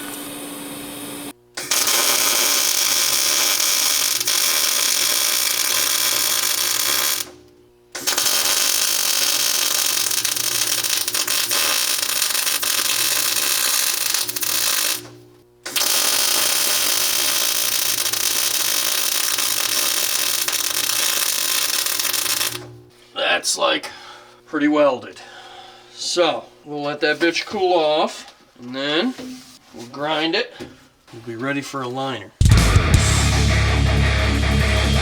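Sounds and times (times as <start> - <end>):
welding arc crackling: 1.6 - 22.7.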